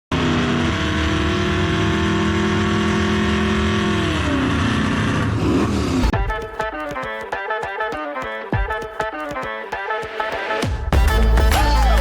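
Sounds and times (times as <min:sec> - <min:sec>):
engine revving: 0:00.1 - 0:06.2.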